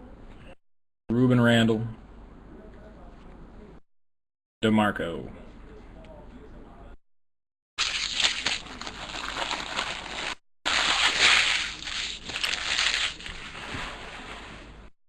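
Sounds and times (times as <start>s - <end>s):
foil wrapper tearing and crinkling: 7.8s - 13.6s.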